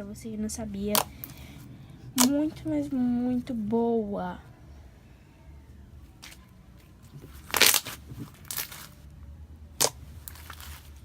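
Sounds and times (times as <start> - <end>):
slime squeezed with crackling pops: 7.5 - 8.7.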